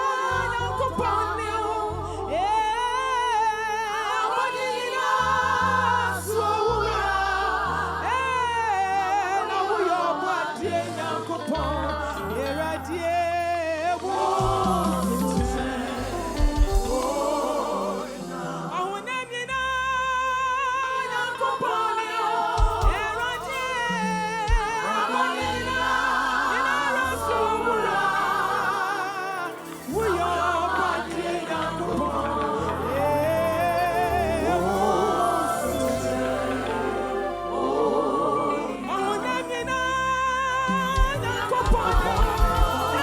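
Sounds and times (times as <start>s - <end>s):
voices singing with vibrato: 0.0s - 43.0s
sustained low bass notes: 11.2s - 18.8s.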